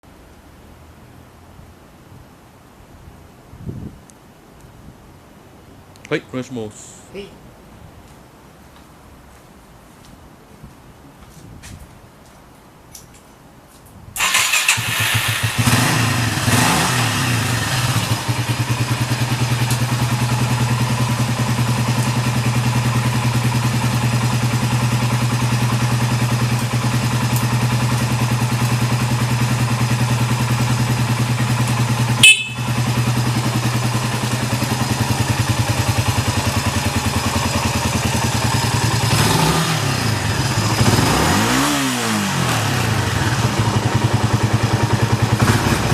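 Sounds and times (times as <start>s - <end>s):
motorcycle engine starting and idling: 14.2s - 45.9s.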